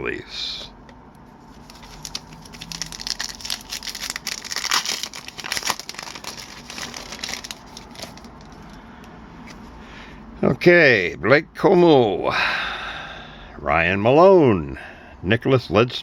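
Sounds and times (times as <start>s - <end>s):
wrapper crinkling and tearing: 1.5s - 8.8s.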